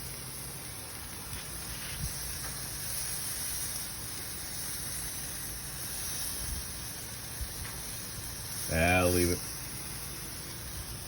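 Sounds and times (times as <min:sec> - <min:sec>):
burgers sizzling on a grill: 0:00.0 - 0:11.0.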